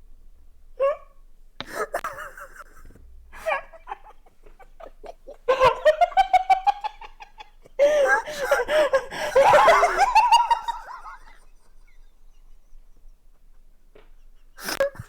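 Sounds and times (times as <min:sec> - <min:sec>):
people laughing: 0:01.7 - 0:12.8.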